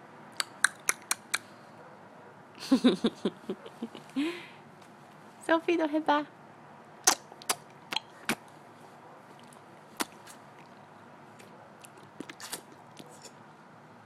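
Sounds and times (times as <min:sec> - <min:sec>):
child making tongue clicks: 0:00.4 - 0:01.5.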